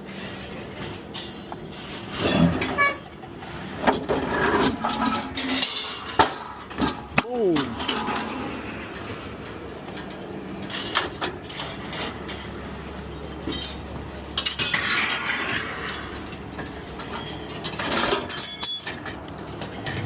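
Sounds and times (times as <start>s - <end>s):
scrap metal clanking: 0.1s - 12.6s.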